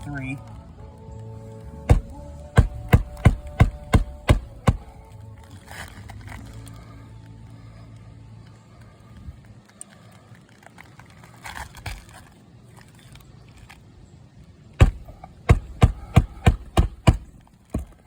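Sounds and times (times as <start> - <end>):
hammer driving nails into shingles: 1.9 - 5.0, 14.8 - 18.0.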